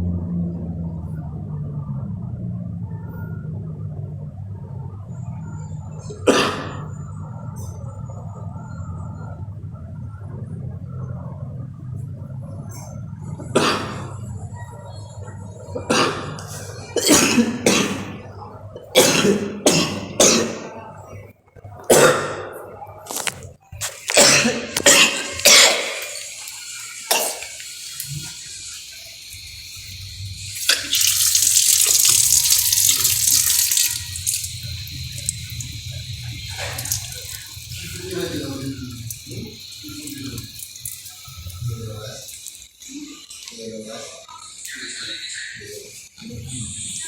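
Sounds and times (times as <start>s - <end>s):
person coughing: 6.3s - 6.8s, 17.0s - 18.2s, 19.0s - 20.8s, 21.9s - 22.6s, 24.1s - 26.1s
steady hissing rush: 23.8s - 47.0s.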